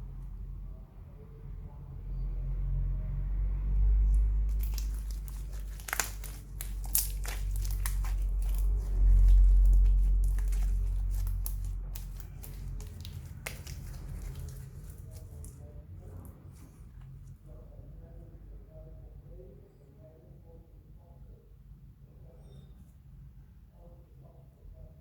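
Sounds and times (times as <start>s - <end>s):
slime crackling pops: 4.5s - 15.6s.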